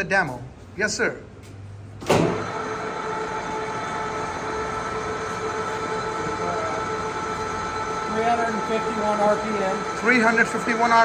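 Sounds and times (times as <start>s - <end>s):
lathe spindle humming: 2.3s - 11.0s
whining gear tones: 2.4s - 11.0s.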